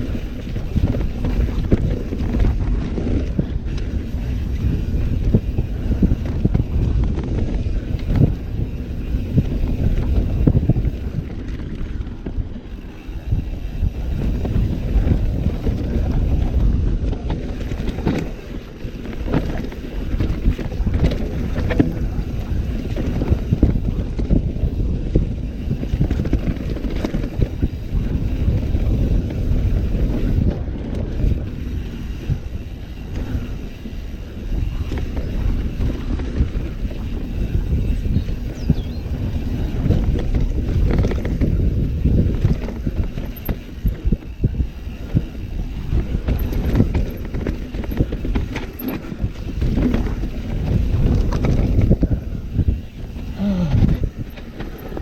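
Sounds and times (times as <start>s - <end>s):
bike knocking and rattling: 0.0s - 55.0s
tyres rumbling over dirt: 0.0s - 55.0s
wind buffeting microphone: 0.0s - 55.0s.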